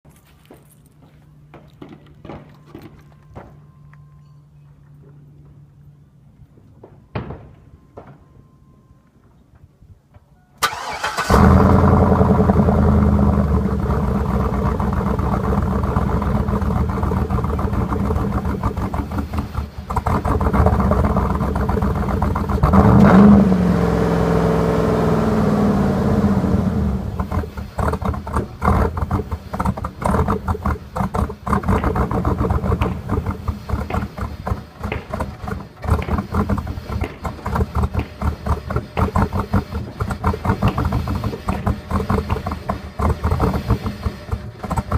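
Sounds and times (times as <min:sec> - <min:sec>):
car engine starting: 0:10.6 - 0:44.9
engine revving: 0:10.6 - 0:44.9
loud car engine idling: 0:10.7 - 0:44.9.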